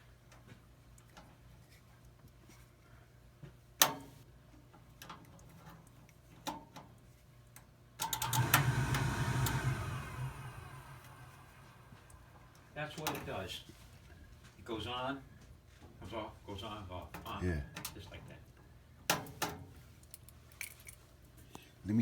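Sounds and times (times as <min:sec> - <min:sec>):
furnace burner motor humming: 0:08.0 - 0:14.1
rush of air: 0:08.3 - 0:12.8.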